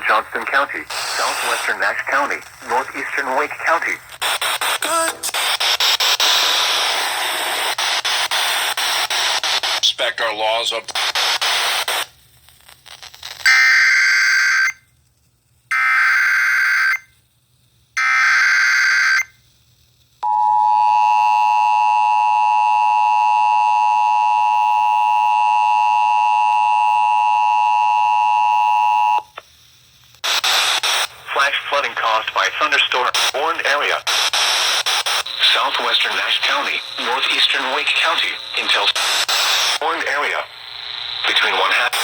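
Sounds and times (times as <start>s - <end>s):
steady attention tone: 20.2s - 29.2s.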